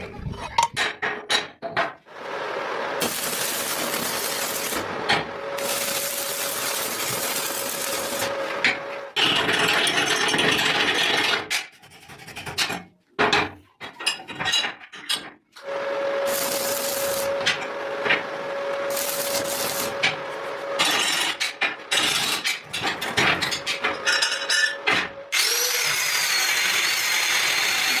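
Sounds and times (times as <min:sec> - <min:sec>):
power tool whining: 0:03.0 - 0:09.1, 0:15.6 - 0:20.8, 0:25.3 - 0:28.0
tools scraping and rubbing: 0:05.6 - 0:12.9.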